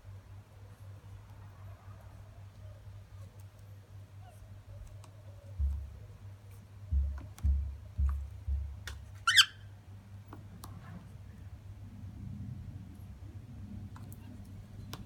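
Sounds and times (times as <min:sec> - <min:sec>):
dull low thumps: 0:05.6 - 0:06.2, 0:06.9 - 0:09.3
cockatiel squawk: 0:09.2 - 0:09.6.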